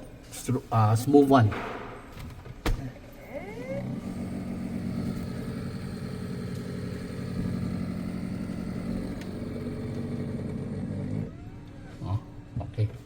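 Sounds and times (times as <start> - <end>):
freezer fan motor humming: 2.7 - 13.0.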